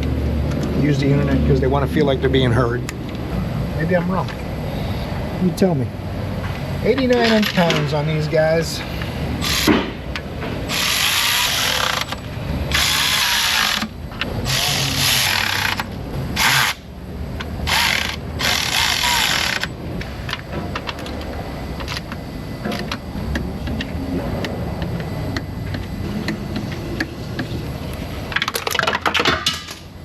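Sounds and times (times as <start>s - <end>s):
power tool running bolts in: 9.4s - 9.9s, 10.7s - 16.8s, 17.6s - 19.7s.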